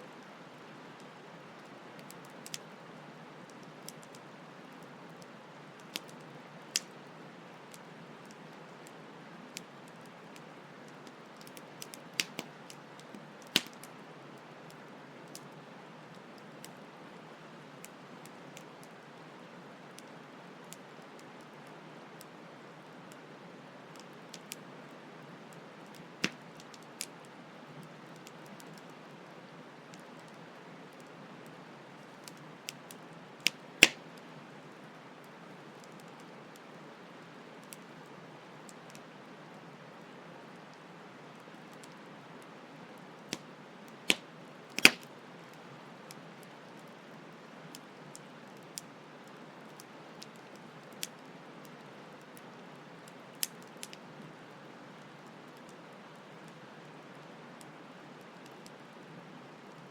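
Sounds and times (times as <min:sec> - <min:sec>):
campfire crackling and popping: 0:02.0 - 0:02.8, 0:03.4 - 0:16.8, 0:23.9 - 0:24.7, 0:25.5 - 0:29.2, 0:29.8 - 0:34.3, 0:41.6 - 0:42.0, 0:43.2 - 0:54.2.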